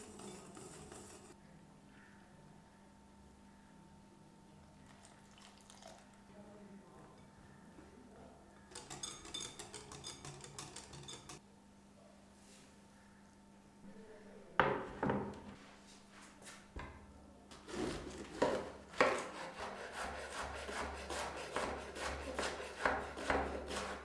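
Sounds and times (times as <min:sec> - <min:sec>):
rasping scraping strokes: 0:00.0 - 0:01.4, 0:08.7 - 0:11.4, 0:17.6 - 0:24.0.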